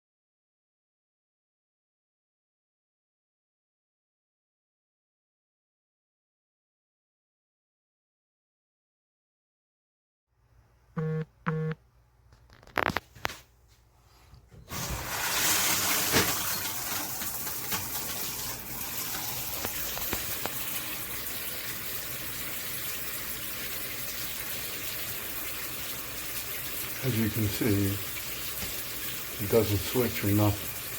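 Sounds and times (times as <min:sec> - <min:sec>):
short electronic beeps: 0:11.0 - 0:11.8.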